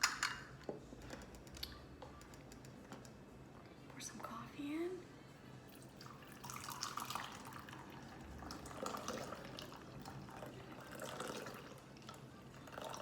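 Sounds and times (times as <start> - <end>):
coffee pouring into a mug: 5.7 - 13.0.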